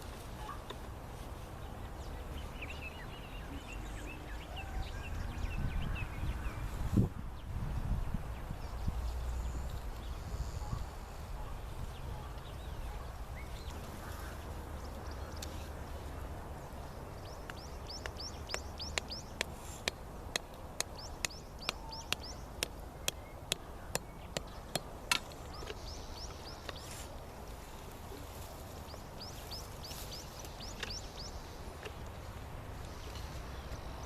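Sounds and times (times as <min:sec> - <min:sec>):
small birds chirping: 0:00.1 - 0:34.0
sharp taps: 0:17.4 - 0:25.2.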